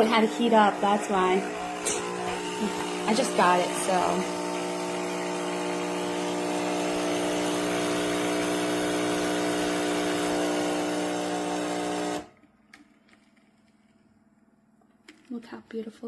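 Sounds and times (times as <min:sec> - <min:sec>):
coffee machine pump buzzing: 0:00.0 - 0:12.4.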